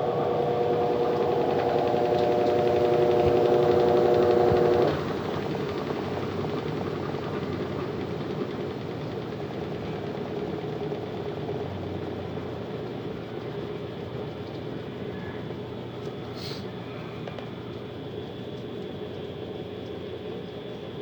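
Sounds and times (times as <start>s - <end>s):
washing machine spinning: 0.0s - 15.0s.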